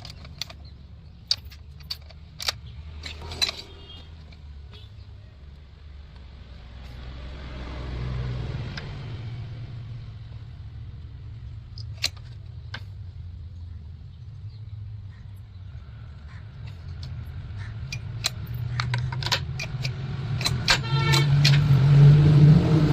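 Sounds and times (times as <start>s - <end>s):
metallic clicks and clinks: 0.0s - 4.8s, 11.7s - 12.9s, 16.6s - 21.7s.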